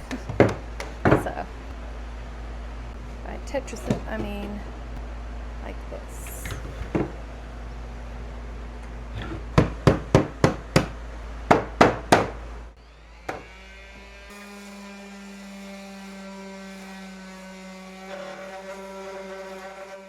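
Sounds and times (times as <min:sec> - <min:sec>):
steady hum: 0:00.0 - 0:13.2.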